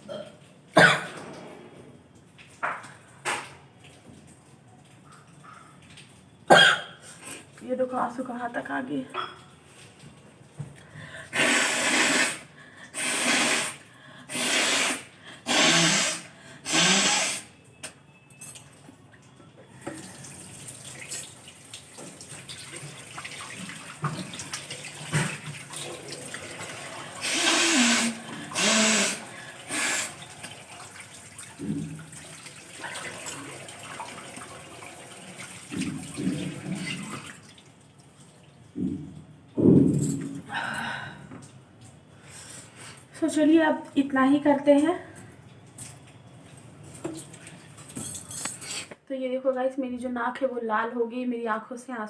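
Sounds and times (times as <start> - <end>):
person blowing nose: 11.3 - 17.5, 27.2 - 30.2
tap running into basin: 30.2 - 37.7.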